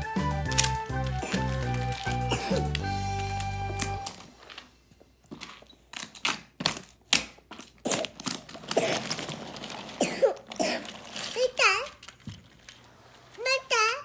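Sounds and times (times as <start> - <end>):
small hard objects clicking: 0.2 - 4.2.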